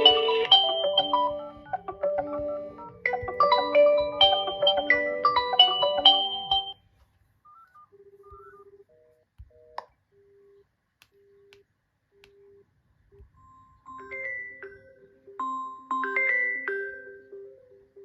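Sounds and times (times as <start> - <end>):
melodic ringtone: 0.0 - 6.8, 13.4 - 18.0
two-note tone: 0.0 - 6.8
low steady calling beep: 7.5 - 10.6.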